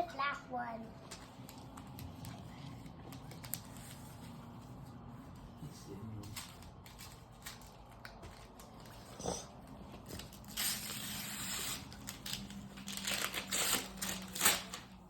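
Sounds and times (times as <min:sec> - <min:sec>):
wrapping paper tearing: 0:01.4 - 0:04.4, 0:06.2 - 0:15.0.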